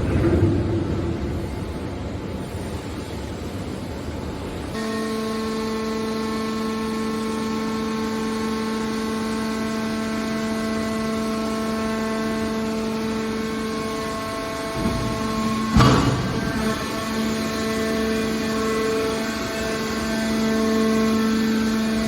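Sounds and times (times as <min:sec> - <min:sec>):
hydraulic power unit whining: 0:04.4 - 0:22.0.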